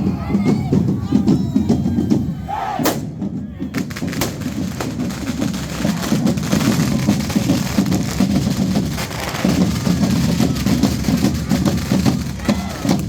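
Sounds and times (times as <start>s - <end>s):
street crowd voices: 0.0s - 13.0s
firecrackers cracking: 3.8s - 13.0s.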